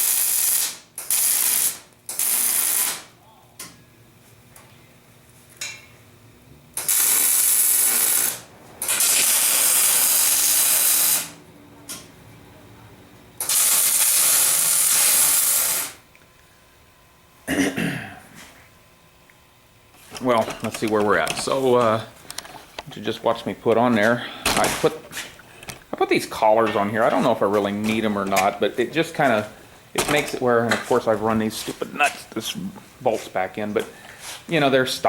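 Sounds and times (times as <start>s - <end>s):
arc welder sizzling: 0.0s - 3.2s, 6.7s - 11.5s, 13.4s - 16.1s.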